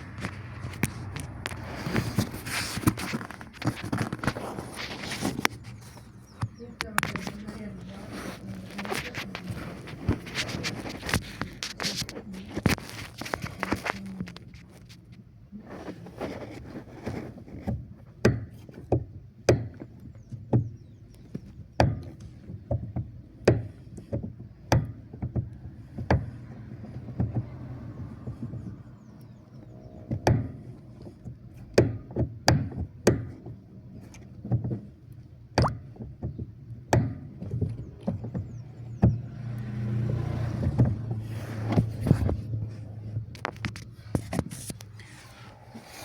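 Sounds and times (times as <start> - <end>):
car engine idling: 0.0 - 16.4, 20.6 - 46.0
sharp knocks from car steering: 17.2 - 34.9, 35.5 - 44.4.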